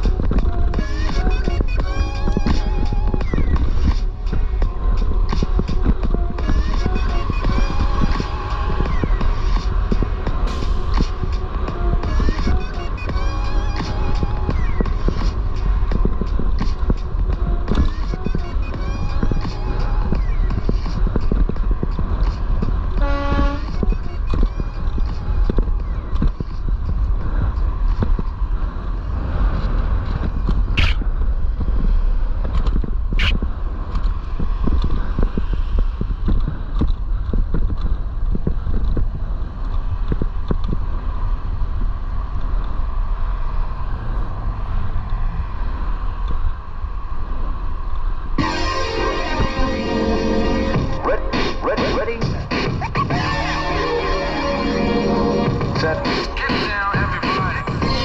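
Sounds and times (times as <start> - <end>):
passing vehicles: 0.0 - 58.0
wind on microphone: 0.0 - 58.0
vehicle horn toot: 23.0 - 24.4, 48.4 - 51.6
high squeaks: 30.8 - 31.0.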